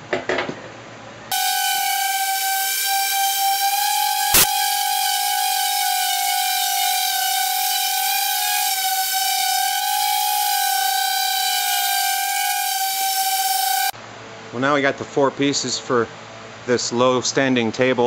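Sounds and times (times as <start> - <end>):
chainsaw cutting a log: 1.3 - 13.9.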